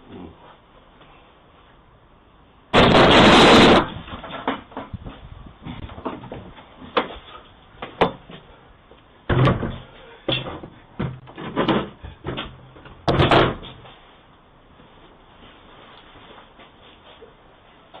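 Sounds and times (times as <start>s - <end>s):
loud bangs and thuds: 2.7s - 4.7s.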